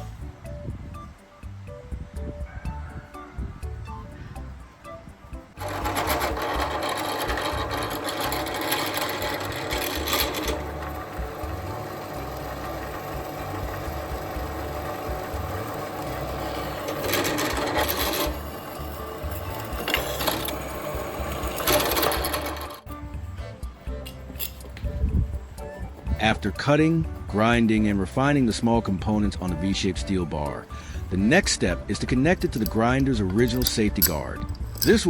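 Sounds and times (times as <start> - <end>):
electric power tool running: 5.6 - 22.9.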